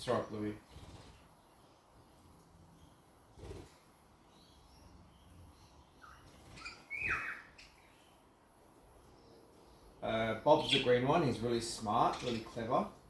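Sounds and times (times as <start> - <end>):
budgerigars chirping: 4.3 - 8.3, 9.0 - 13.0.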